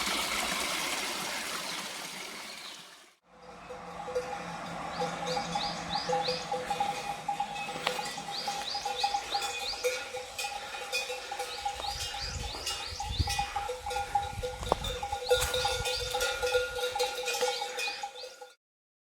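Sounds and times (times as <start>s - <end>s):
high rising chirps: 3.6s - 13.7s.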